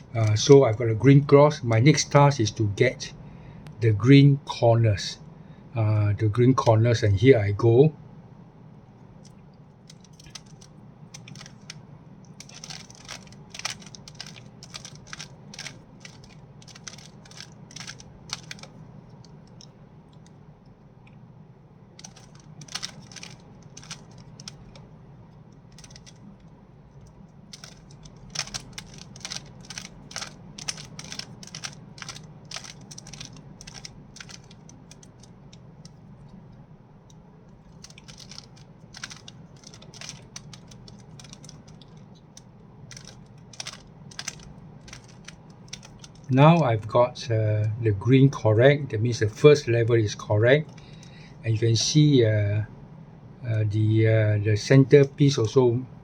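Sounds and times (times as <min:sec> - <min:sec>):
low steady hum: 0:00.0 - 0:56.0
plastic cube layers clicking: 0:09.9 - 0:11.8, 0:12.4 - 0:18.8, 0:22.0 - 0:24.8, 0:25.7 - 0:26.2, 0:27.5 - 0:36.0, 0:37.7 - 0:42.0, 0:42.9 - 0:46.3.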